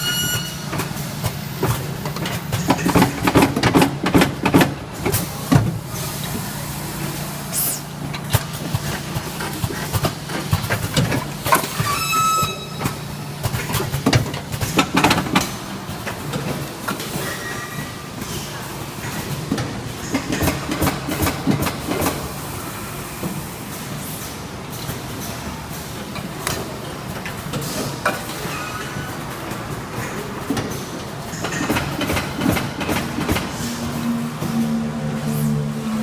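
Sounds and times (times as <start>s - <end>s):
brief pitched tone: 0.0s - 0.9s, 11.8s - 13.0s
packaging machine hum: 0.0s - 17.2s
machine clacks and knocks: 1.6s - 5.8s, 19.5s - 22.2s, 30.5s - 33.5s.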